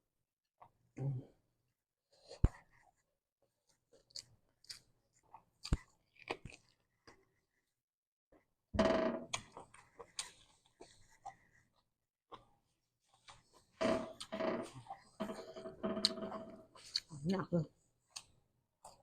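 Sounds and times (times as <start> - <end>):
person chewing food: 3.6 - 7.7, 9.3 - 17.2, 18.0 - 19.0
wet crunchy mouth clicks: 4.0 - 6.8.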